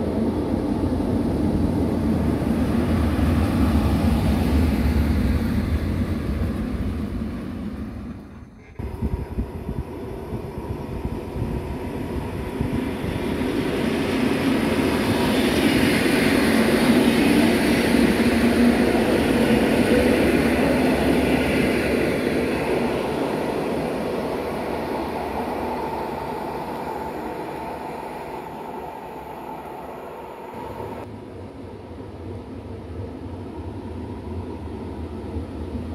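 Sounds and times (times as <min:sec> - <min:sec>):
train wheels rumbling on rails: 0:00.0 - 0:29.8.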